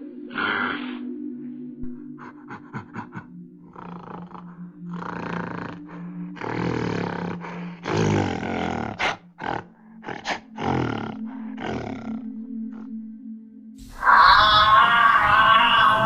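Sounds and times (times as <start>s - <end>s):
animal growling roars: 3.7s - 12.9s, 13.8s - 16.0s.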